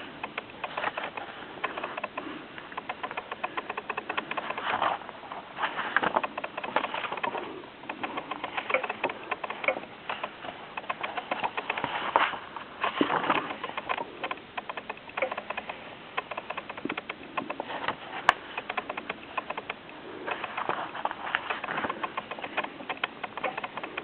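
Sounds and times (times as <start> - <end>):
book pages rustling: 0.0 - 24.0
sharp click: 6.2 - 11.9, 13.2 - 24.0.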